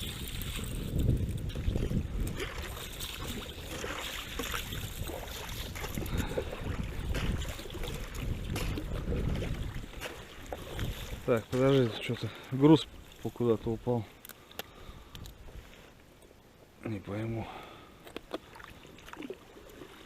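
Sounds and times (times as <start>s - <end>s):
wind buffeting microphone: 0.0s - 12.2s
water splashing and dripping: 0.0s - 13.4s, 18.2s - 20.0s.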